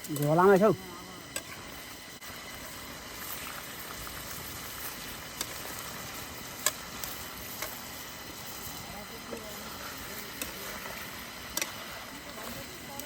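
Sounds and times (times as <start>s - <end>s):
food sizzling over wood fire: 0.0s - 13.0s
sharp fire pops: 2.3s - 10.7s.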